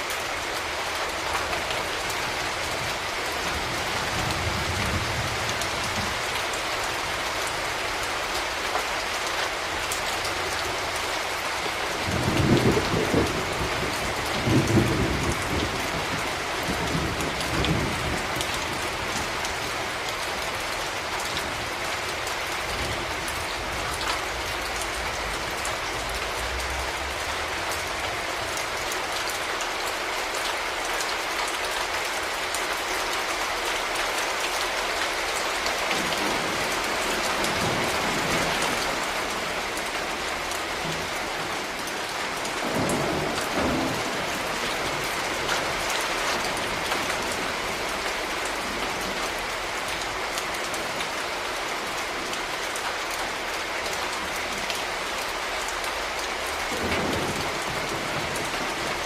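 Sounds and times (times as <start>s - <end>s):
steady rain: 0.0s - 59.0s
thunder rumbling: 12.0s - 19.4s, 42.5s - 48.0s.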